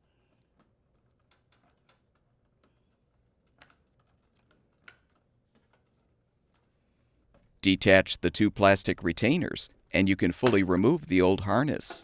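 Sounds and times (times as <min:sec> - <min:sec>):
small clicks of wire terminals: 0:00.6 - 0:05.9.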